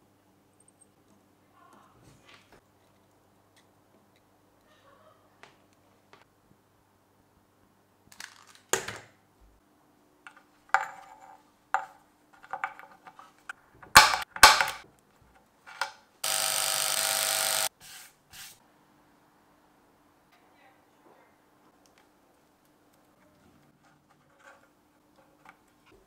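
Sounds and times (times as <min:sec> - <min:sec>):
knocks and clicks of tools: 0:13.8 - 0:14.9
power drill running: 0:16.2 - 0:17.7.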